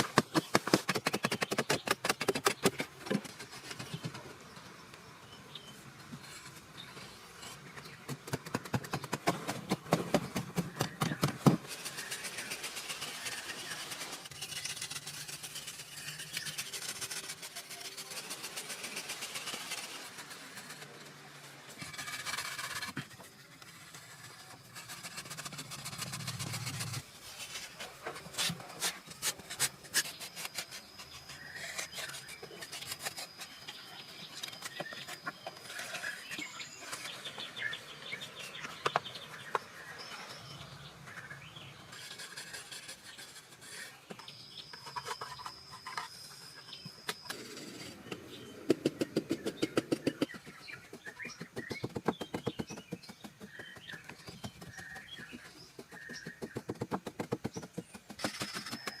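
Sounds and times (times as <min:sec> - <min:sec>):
scraping and rasping: 0:06.1 - 0:39.6, 0:41.1 - 0:59.0
sharp knocks and clicks: 0:48.7 - 0:59.0.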